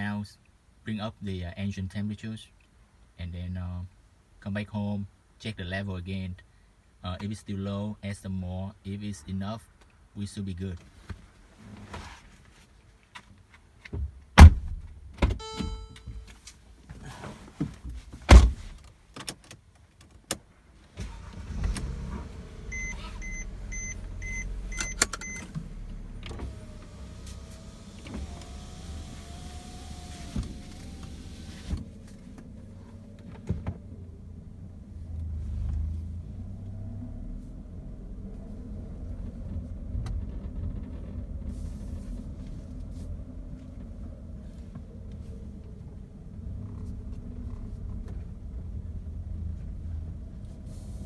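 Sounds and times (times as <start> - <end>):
loud thumps: 14.4 - 16.2
car engine starting and running: 14.4 - 16.3, 21.0 - 51.0
short chime: 15.4 - 16.3
short warning beeps: 15.4 - 16.3, 22.7 - 25.4.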